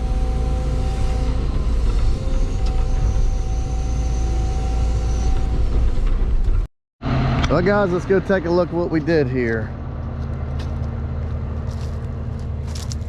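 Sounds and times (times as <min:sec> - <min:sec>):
thin hydraulic whine: 0:00.0 - 0:06.4
excavator diesel engine running: 0:00.0 - 0:13.0.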